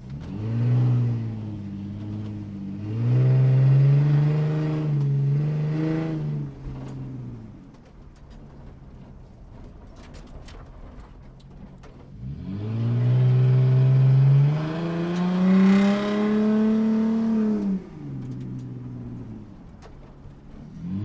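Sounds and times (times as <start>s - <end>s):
sports car engine accelerating: 0.0s - 7.9s, 12.1s - 21.0s.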